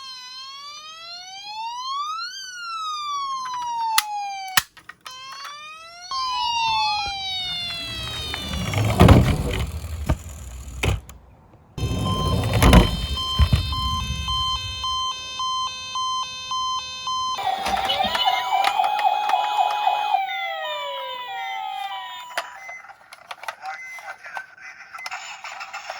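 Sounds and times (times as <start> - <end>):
electronic toy siren: 0.0 - 10.7, 11.8 - 24.2
toy cars rolling down plastic slope: 7.2 - 11.1, 17.4 - 24.2.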